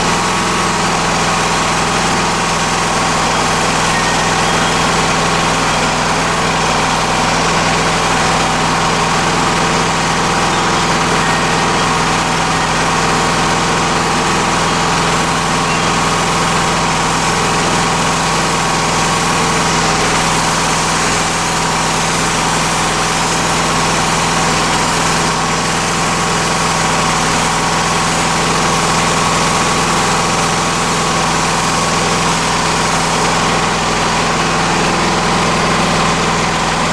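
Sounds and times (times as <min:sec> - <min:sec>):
pressure washer engine running: 0:00.0 - 0:36.9.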